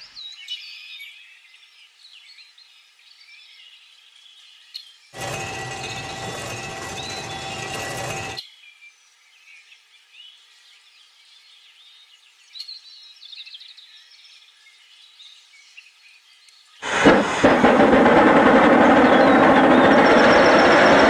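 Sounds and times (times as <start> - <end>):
loud train engine: 5.2 - 8.4, 16.8 - 21.0.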